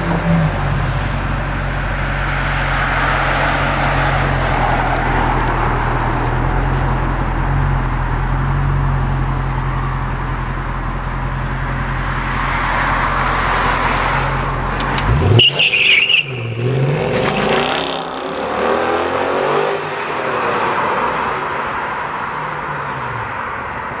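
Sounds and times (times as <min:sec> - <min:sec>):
car engine idling: 0:00.0 - 0:18.2
car engine revving: 0:00.0 - 0:21.8.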